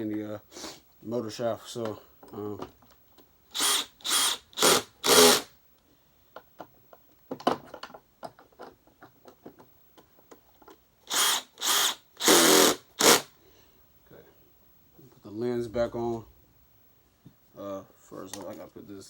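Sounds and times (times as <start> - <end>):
power drill driving screws: 3.5 - 5.5, 11.1 - 13.3.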